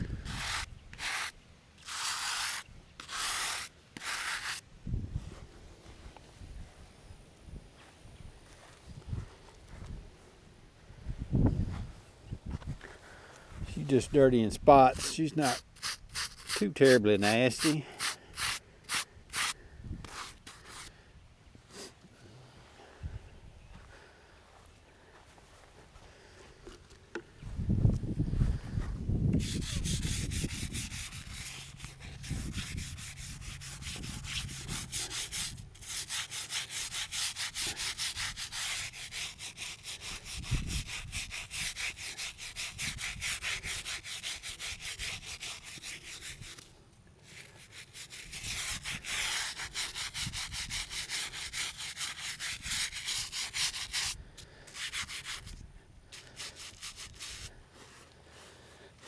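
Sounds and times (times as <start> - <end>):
brush scrubbing stone: 0.1 - 4.6, 14.0 - 20.9, 29.4 - 58.9.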